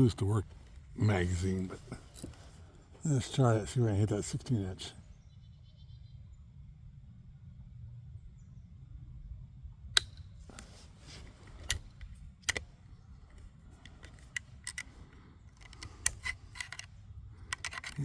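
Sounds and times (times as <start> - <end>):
rifle bolt clicking: 10.0 - 10.7, 11.6 - 18.0.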